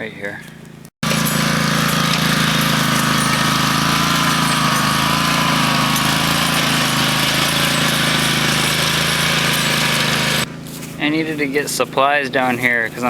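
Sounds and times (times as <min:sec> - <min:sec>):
power tool pulsing: 0:01.0 - 0:10.5.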